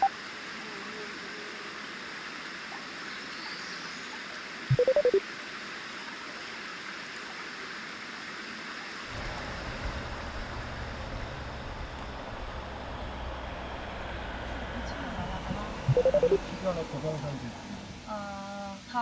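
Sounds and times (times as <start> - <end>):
rushing hiss of water or wind: 0.0 - 14.4
short loud beeps: 4.7 - 5.2, 15.9 - 16.4.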